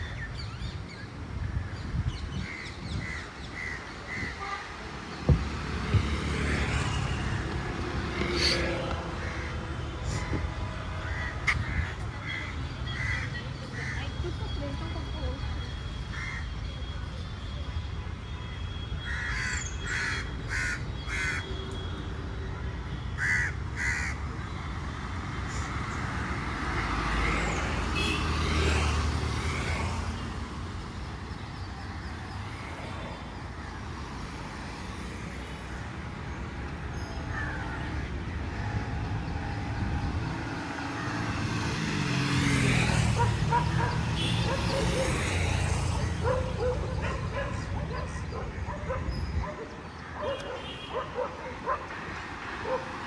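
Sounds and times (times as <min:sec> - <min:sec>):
road traffic rumble: 0:00.0 - 0:53.0
crows cawing: 0:19.1 - 0:21.4, 0:23.2 - 0:24.2, 0:37.3 - 0:37.9.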